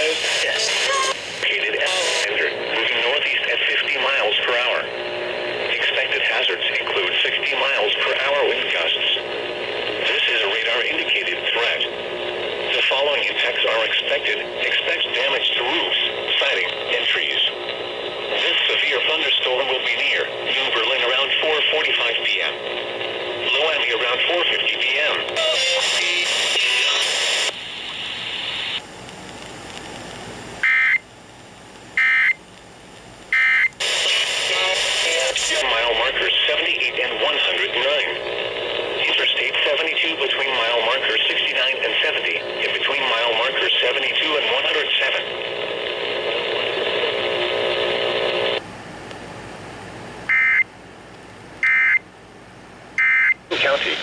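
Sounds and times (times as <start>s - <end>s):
radio hiss: 0.0s - 30.7s, 33.3s - 48.6s, 53.4s - 54.0s
buzzy digital data bursts: 33.8s - 36.2s.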